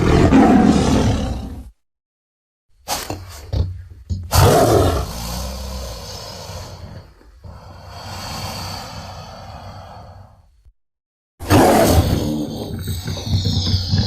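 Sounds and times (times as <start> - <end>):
loud rough creature call: 4.3 - 10.3, 11.4 - 14.0
long breathy exhale: 5.1 - 10.5.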